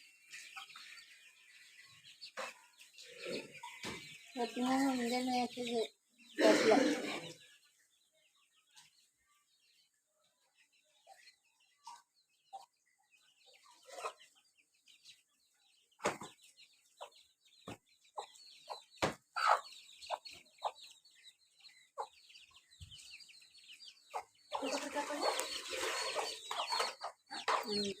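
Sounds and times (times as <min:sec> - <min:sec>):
chicks peeping: 0:00.0 - 0:28.0
hen clucking: 0:02.3 - 0:07.5, 0:13.6 - 0:14.4, 0:17.0 - 0:23.0, 0:23.8 - 0:28.0.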